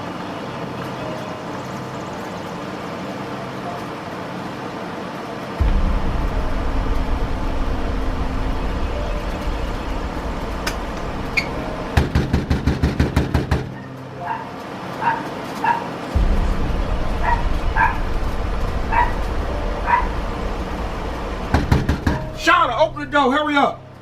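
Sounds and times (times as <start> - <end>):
low steady rumble: 5.6 - 12.4, 16.1 - 24.0
puppy yipping: 13.7 - 15.9, 19.9 - 20.1.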